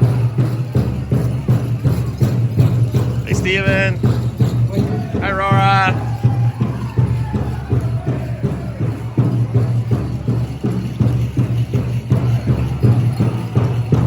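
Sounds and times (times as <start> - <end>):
big drum beaten in unison: 0.0 - 14.0.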